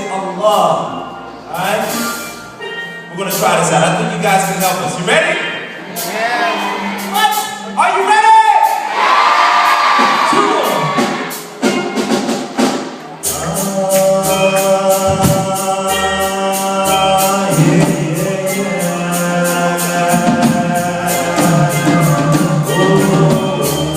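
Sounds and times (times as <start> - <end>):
song with singing over a beat: 12.7 - 23.9.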